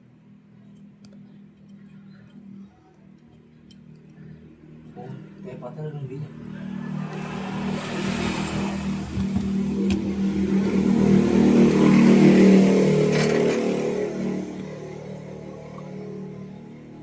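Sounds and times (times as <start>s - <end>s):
vehicle engine passing by: 6.1s - 17.0s.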